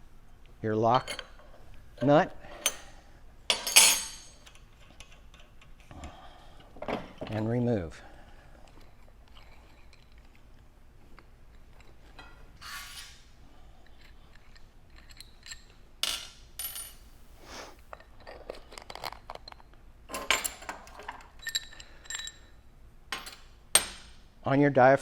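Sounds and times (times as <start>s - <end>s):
small metal parts clinking: 3.5s - 5.7s, 13.8s - 17.2s, 17.9s - 24.0s.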